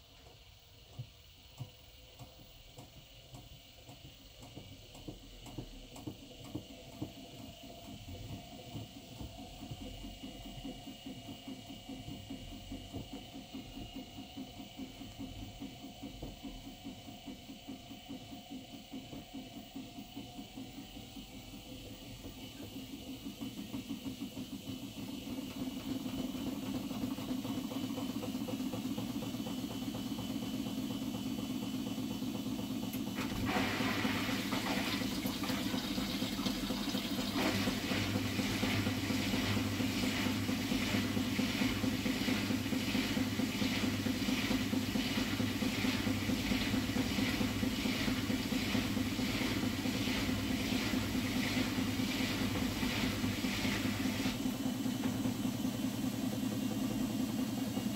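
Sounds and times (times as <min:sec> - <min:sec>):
washing machine spinning: 0:00.0 - 0:57.9.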